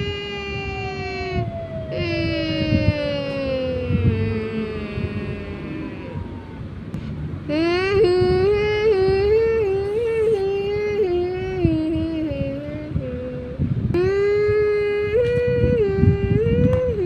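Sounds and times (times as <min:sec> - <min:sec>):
siren-like wail: 0:00.0 - 0:13.1
low rumbling noise: 0:00.0 - 0:17.0.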